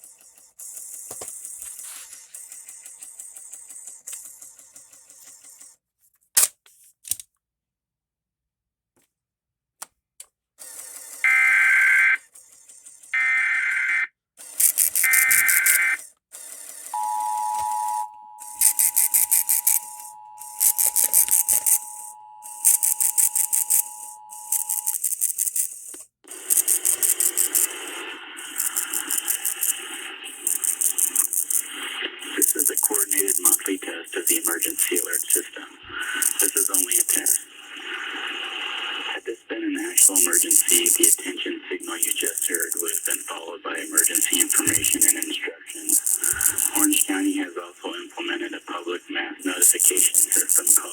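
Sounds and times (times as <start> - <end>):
screeching data bursts: 11.2 - 12.2, 13.2 - 16.1, 17.0 - 38.1, 39.8 - 47.5, 49.4 - 50.9
two-tone attention signal: 11.3 - 12.2, 13.2 - 14.1, 14.9 - 16.0, 17.0 - 25.1
high rattling hiss: 26.3 - 33.6, 43.8 - 47.0.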